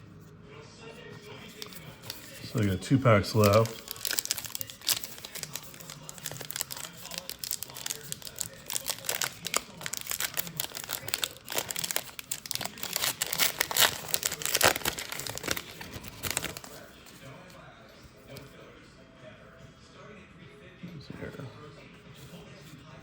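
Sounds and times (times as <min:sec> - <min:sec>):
wrapper crinkling and tearing: 0:01.5 - 0:16.9.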